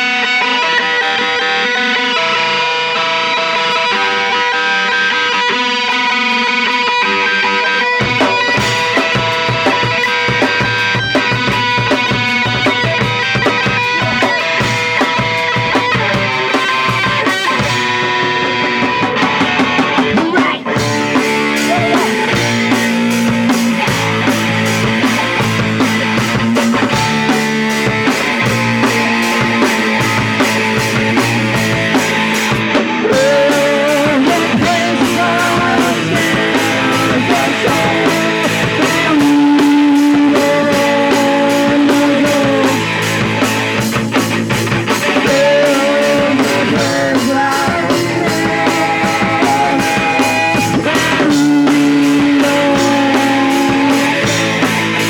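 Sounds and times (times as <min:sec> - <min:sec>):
punk rock band playing live: 0:00.0 - 0:55.0.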